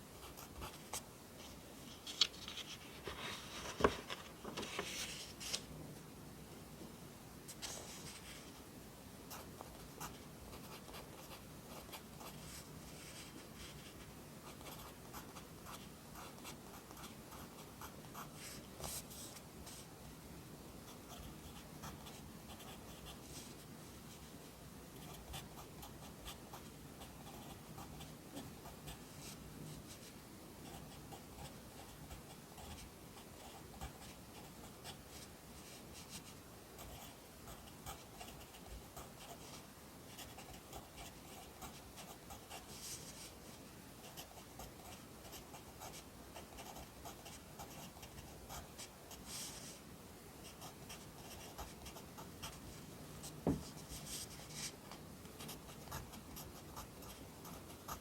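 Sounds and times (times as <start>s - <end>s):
pencil scratching on paper: 55.4s - 58.0s.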